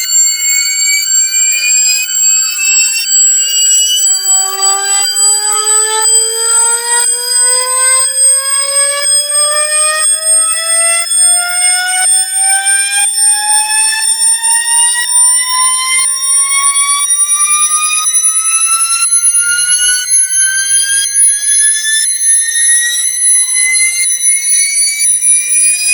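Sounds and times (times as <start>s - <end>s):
buzzy electronic alarm tone: 0.0s - 16.8s.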